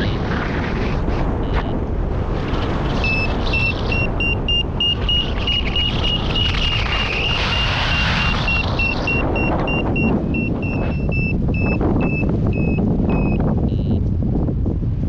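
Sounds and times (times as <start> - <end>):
wind on microphone: 0.0 - 15.0
variometer short high beeps: 1.4 - 1.8, 3.0 - 6.5, 8.4 - 14.0.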